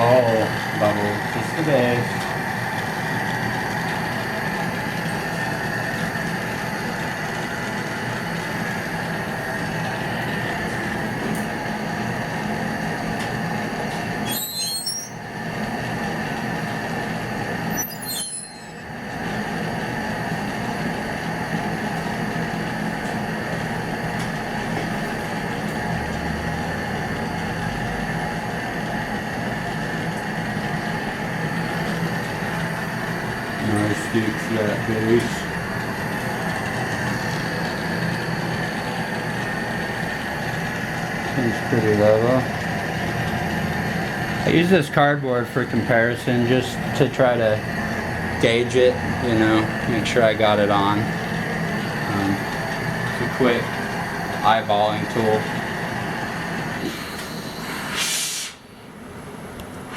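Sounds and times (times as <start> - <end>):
torch flame hissing: 0.0 - 24.1, 28.2 - 43.0, 43.6 - 58.7.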